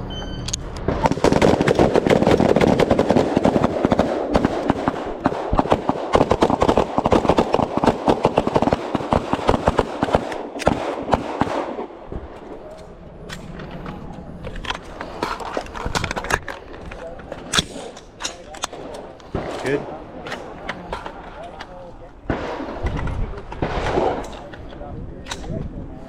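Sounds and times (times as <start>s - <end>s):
rapid gunfire: 0.9s - 11.9s.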